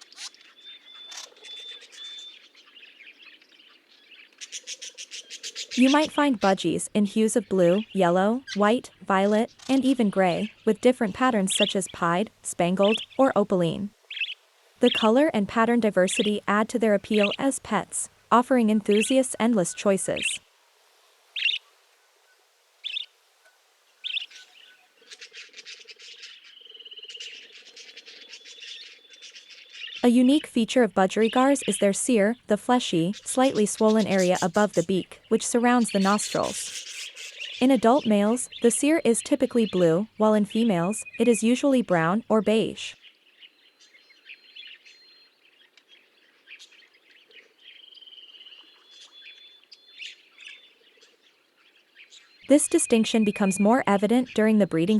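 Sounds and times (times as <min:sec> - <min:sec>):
budgerigars chirping: 0:00.0 - 0:17.9, 0:21.4 - 0:21.7, 0:22.8 - 0:23.1, 0:24.0 - 0:30.0, 0:31.1 - 0:43.0.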